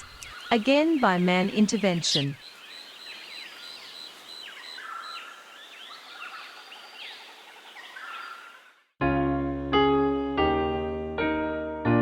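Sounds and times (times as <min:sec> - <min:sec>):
background hiss: 0:00.0 - 0:08.6
sparrows chirping: 0:00.0 - 0:08.6
soft piano music: 0:09.0 - 0:12.0.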